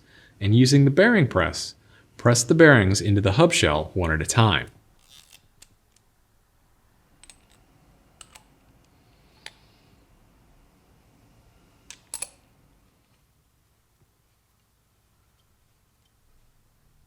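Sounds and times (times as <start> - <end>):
metal tools clicking: 11.9 - 12.4.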